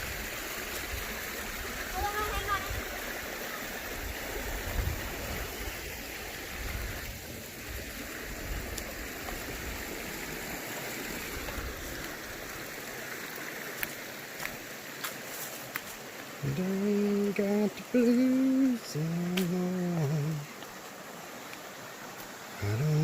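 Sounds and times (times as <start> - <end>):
water rushing over rocks: 0.0 - 23.0.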